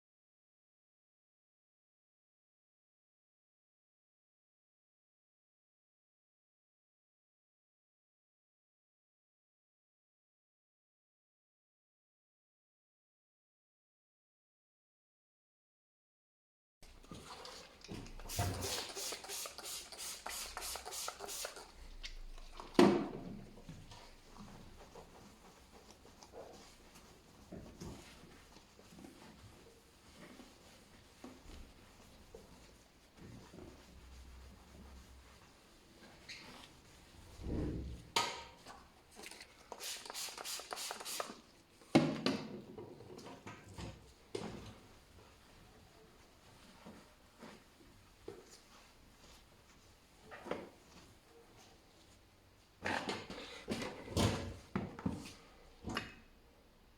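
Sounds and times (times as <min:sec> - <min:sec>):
rapid scrubbing strokes: 0:18.3 - 0:21.8.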